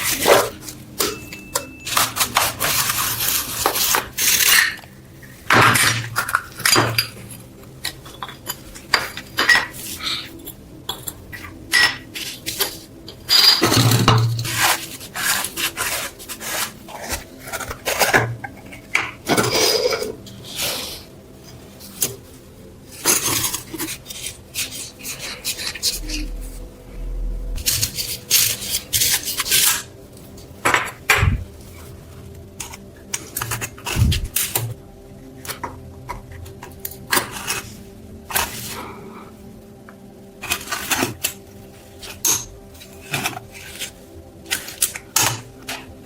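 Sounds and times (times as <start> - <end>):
metal scraping: 24.2 - 29.7.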